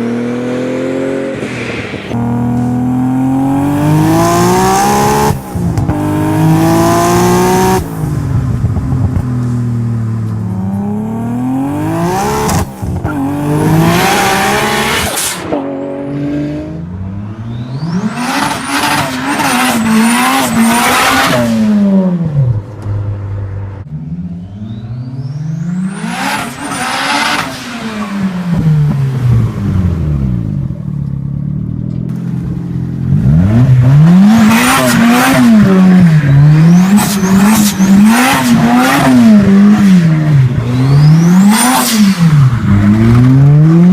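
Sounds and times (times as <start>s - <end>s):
car engine accelerating: 0.0s - 43.9s
turbo flutter and whistles: 24.3s - 25.9s.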